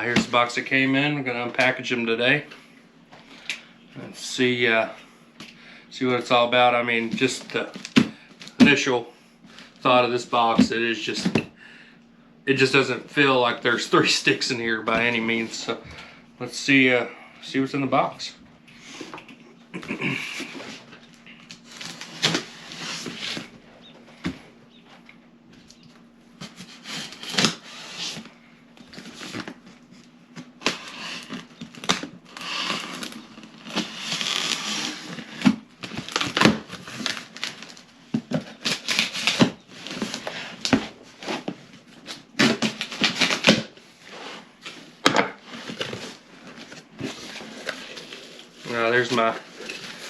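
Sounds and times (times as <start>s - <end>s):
packing material rustling: 30.6s - 43.6s.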